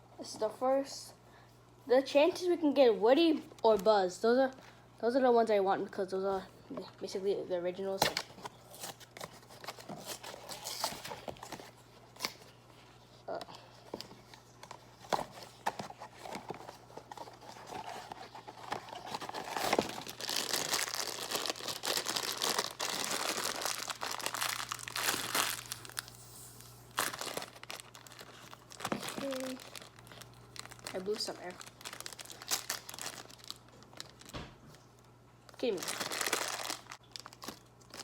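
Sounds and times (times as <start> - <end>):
packaging crinkling: 14.0 - 38.0.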